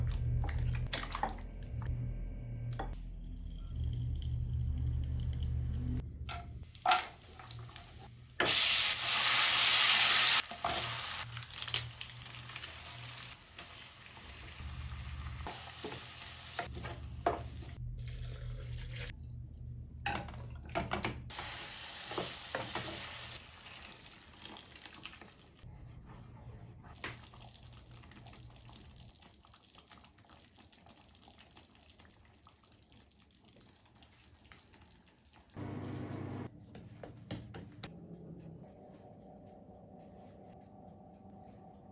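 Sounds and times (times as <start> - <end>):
food sizzling in a pan: 7.1 - 16.7, 21.3 - 24.8.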